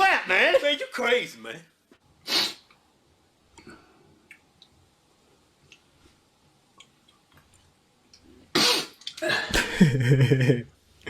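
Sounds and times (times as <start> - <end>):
sharp loud sniff: 2.2 - 2.7.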